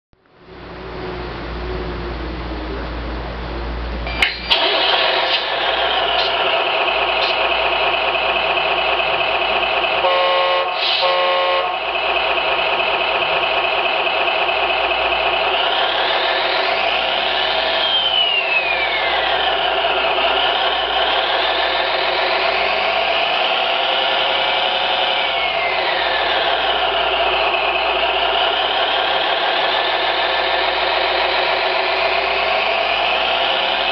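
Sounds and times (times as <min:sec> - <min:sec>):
simulated truck engine: 0:00.2 - 0:33.9
truck horn blasts: 0:10.0 - 0:11.8.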